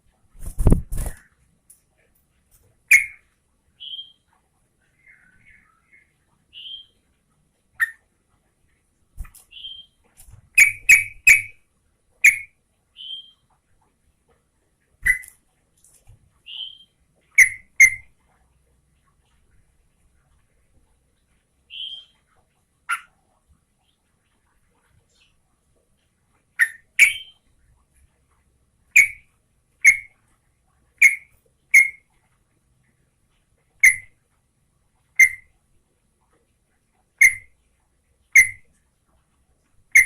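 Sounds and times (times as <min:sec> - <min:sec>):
soft whistled bird notes: 0:02.9 - 0:03.2, 0:03.8 - 0:04.3, 0:04.9 - 0:07.0, 0:09.5 - 0:10.0, 0:16.5 - 0:18.0, 0:21.7 - 0:22.2, 0:35.2 - 0:35.5.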